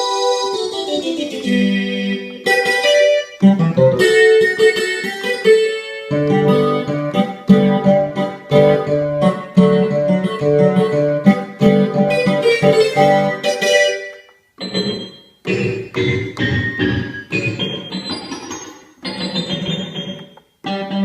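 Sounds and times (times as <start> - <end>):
keyboard synthesizer sound: 0.0 - 4.7, 5.8 - 21.0
plucked synthesizer chords: 0.0 - 21.0.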